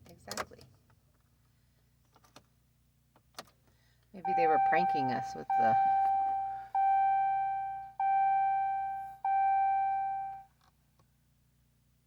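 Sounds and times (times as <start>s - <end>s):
car warning chime: 4.2s - 10.4s.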